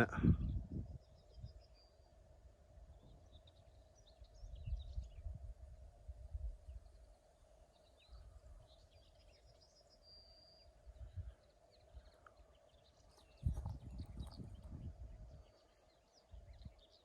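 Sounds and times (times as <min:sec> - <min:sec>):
wind buffeting microphone: 0:00.0 - 0:01.7, 0:04.3 - 0:06.9, 0:10.9 - 0:11.4, 0:13.2 - 0:16.9
small birds chirping: 0:00.0 - 0:05.6, 0:06.5 - 0:17.0.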